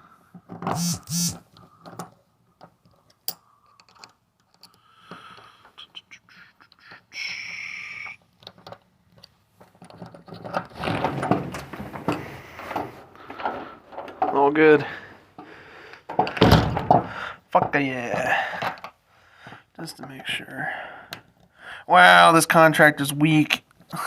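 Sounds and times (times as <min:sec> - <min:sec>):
steady whir: 0:00.7 - 0:01.4.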